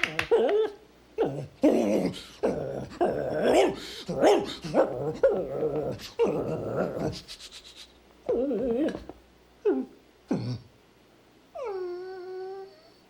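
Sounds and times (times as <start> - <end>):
dog whining and whimpering: 0.1 - 7.2, 8.2 - 10.7, 11.6 - 13.0.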